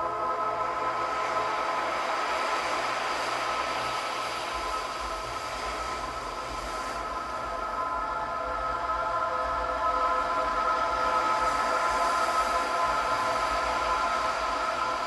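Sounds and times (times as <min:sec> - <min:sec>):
soft ambient music: 0:00.0 - 0:15.0.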